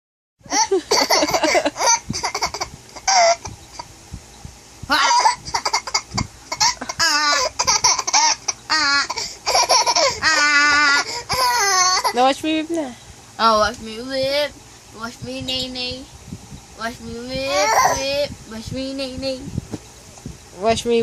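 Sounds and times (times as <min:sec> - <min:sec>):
baby laughing: 0:00.5 - 0:03.9, 0:04.9 - 0:12.3, 0:17.4 - 0:18.2.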